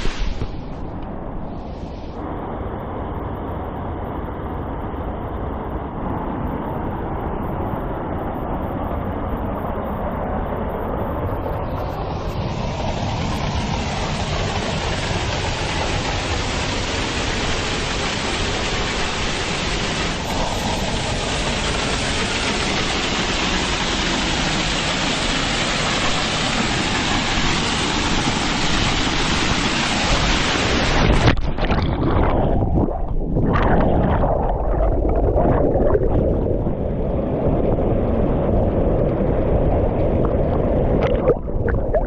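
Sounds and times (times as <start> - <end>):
waterfall roaring: 12.8 - 35.4.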